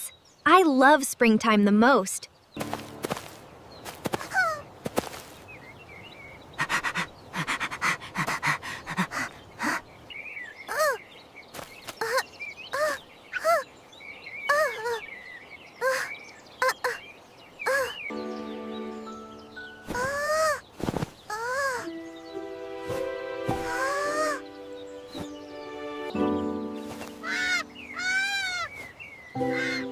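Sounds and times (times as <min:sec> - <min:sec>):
faint birdsong: 0:00.0 - 0:29.9
held musical chord: 0:18.1 - 0:19.8, 0:21.9 - 0:28.0, 0:29.4 - 0:29.9
squeaky cartoon animal calls: 0:27.2 - 0:28.7.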